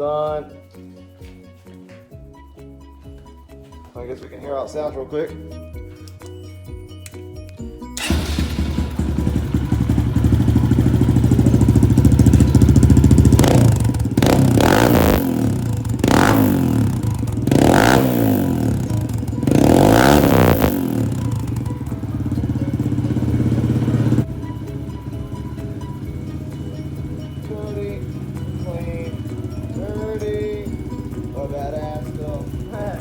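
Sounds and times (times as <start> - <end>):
motorcycle engine idling: 8.0 - 33.0
motorcycle engine revving: 8.0 - 33.0.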